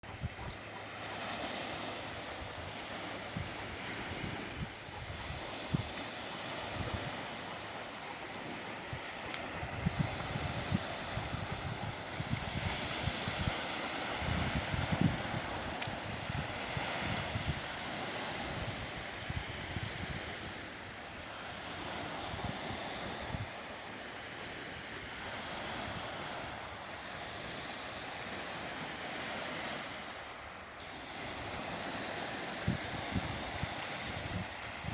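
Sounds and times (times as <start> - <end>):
wind buffeting microphone: 0.0 - 0.7, 1.8 - 7.7, 8.4 - 23.7, 31.0 - 34.9
sea waves washing onto shore: 0.0 - 34.9.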